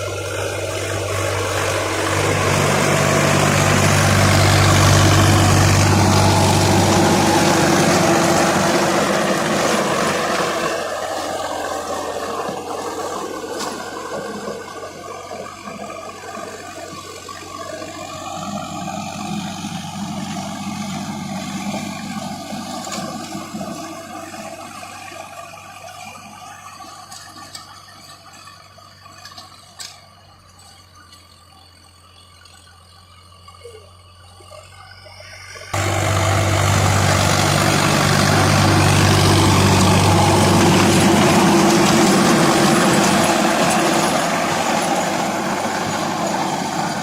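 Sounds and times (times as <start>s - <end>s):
tractor diesel engine running: 0.0s - 47.0s
rushing rattling noise: 35.8s - 47.0s.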